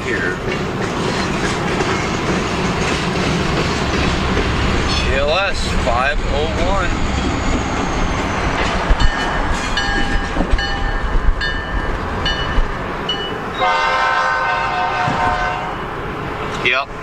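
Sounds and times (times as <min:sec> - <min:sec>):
locomotive air horn: 0:13.6 - 0:15.9.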